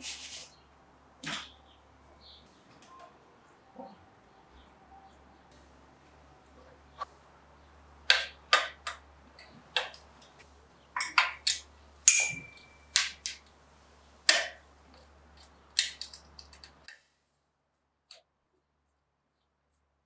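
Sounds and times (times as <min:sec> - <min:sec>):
clicks and knocks of tools: 0:11.0 - 0:13.5, 0:14.3 - 0:17.0.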